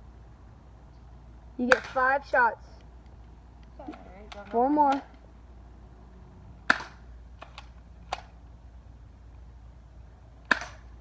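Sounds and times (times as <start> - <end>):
airsoft gun pops: 1.7 - 2.2, 6.7 - 8.4, 10.5 - 10.9.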